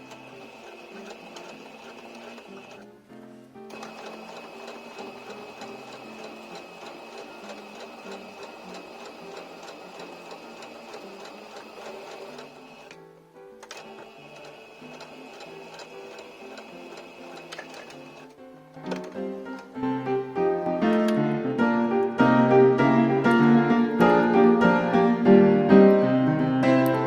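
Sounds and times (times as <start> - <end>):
sewing machine stitching: 0.0 - 2.9, 3.7 - 13.0, 13.6 - 19.1.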